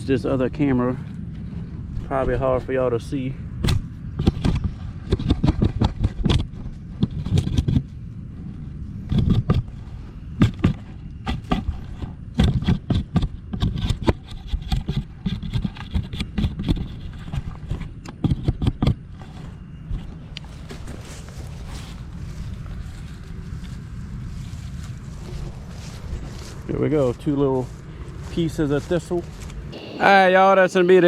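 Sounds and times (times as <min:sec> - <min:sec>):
low background noise: 0:29.7 - 0:31.0.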